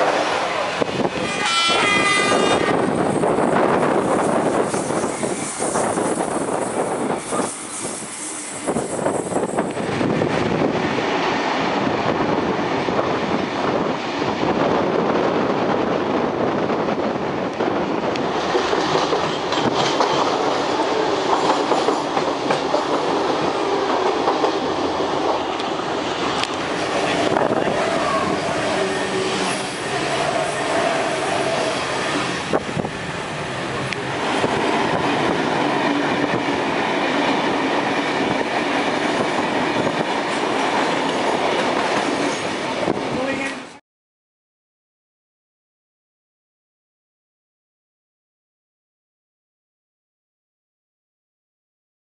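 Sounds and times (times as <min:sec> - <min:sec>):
train rumbling on rails: 0:00.0 - 0:43.8
train horn note: 0:01.2 - 0:02.9.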